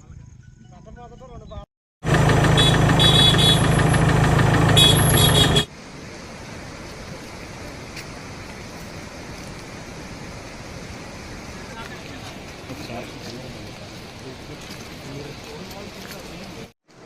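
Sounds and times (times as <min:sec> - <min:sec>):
loud engine running: 0:02.0 - 0:05.7.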